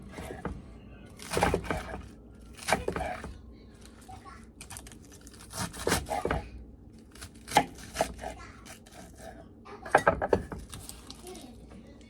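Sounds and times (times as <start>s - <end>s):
food and utensils scraping: 0.0s - 0.6s, 1.2s - 6.5s.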